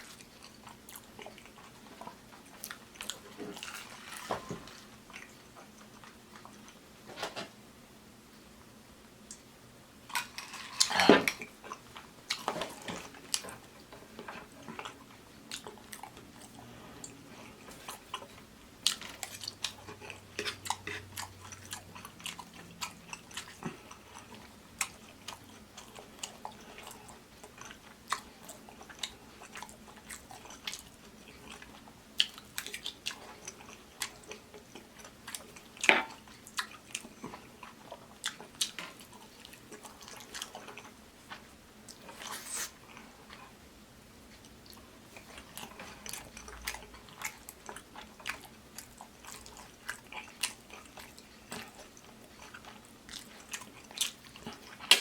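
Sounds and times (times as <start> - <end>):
wet chewing and lip-smacking: 14.6 - 43.5, 44.3 - 55.0.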